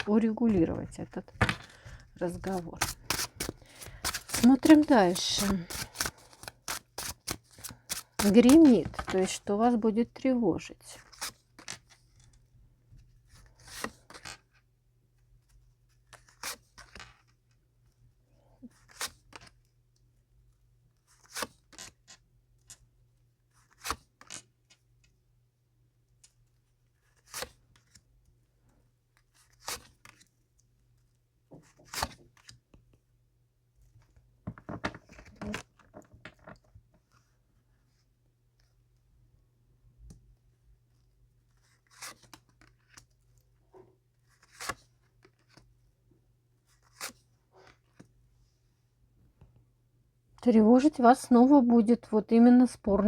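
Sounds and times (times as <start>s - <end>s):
cards rustling and snapping: 0.0s - 9.4s, 13.5s - 14.4s, 31.6s - 32.6s, 41.6s - 43.1s, 44.3s - 45.7s.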